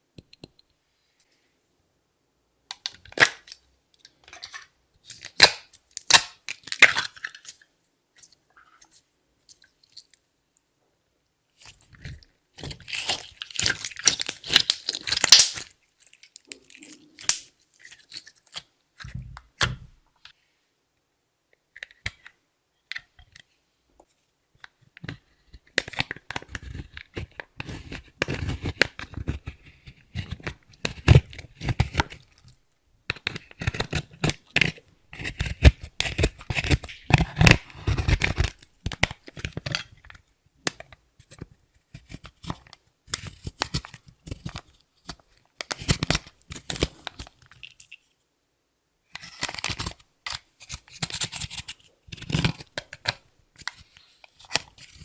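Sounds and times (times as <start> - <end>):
slime crackling and popping: 12.7 - 17.5.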